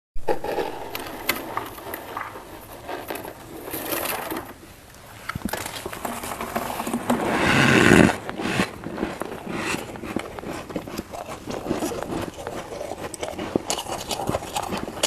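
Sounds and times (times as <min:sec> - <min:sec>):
ice frost crunching: 0:00.2 - 0:15.0.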